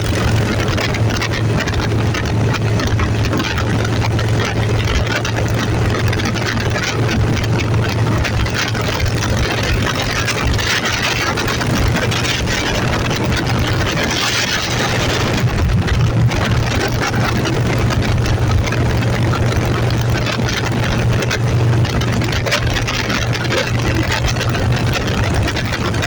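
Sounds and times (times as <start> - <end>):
vehicle engine hum: 0.0 - 26.0.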